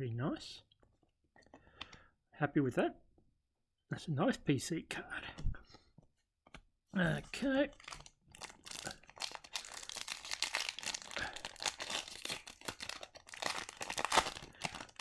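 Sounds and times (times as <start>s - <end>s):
foil wrapper crinkling: 7.4s - 15.0s.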